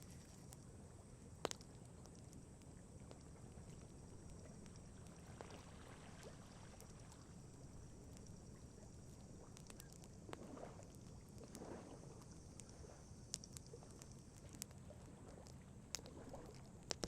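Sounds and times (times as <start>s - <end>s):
campfire crackling and popping: 1.4s - 17.0s
lake water lapping: 3.4s - 13.1s, 14.8s - 16.8s.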